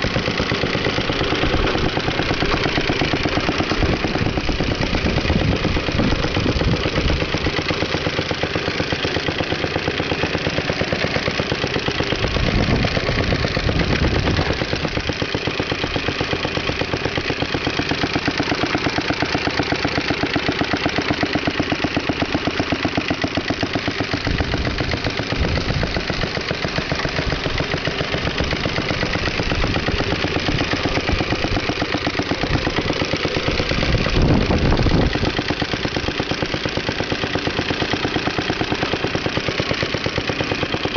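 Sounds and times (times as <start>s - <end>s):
lawn mower engine running: 0.0s - 40.9s
low rumbles: 32.4s - 35.4s.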